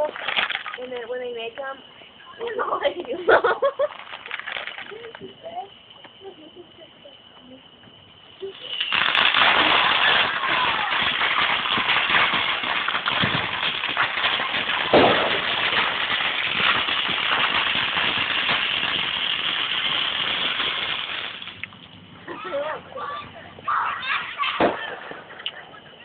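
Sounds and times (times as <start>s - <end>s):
fireworks crackling: 0.0s - 26.0s
loud firework bang: 8.8s - 21.6s, 24.2s - 25.4s.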